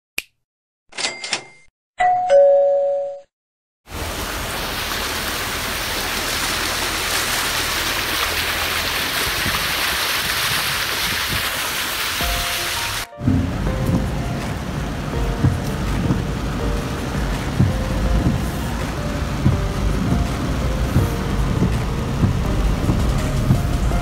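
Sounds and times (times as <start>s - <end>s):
two-note ding-dong chime: 2.0s - 3.3s
rain pouring: 3.9s - 24.0s.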